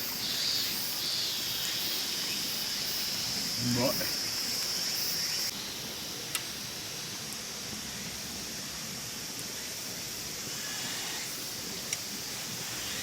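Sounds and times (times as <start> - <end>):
outdoor background hiss: 0.0 - 13.0
faint ticks: 6.3 - 6.6, 11.8 - 12.1.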